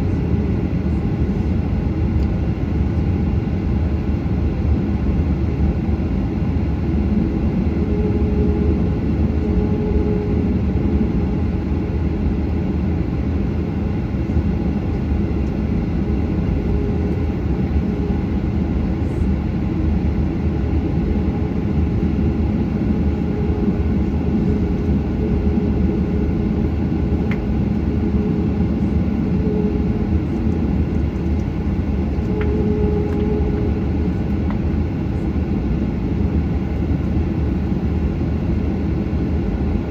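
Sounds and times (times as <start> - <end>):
jet engine cabin noise: 0.0 - 39.9
faint wavering hum: 5.6 - 37.0.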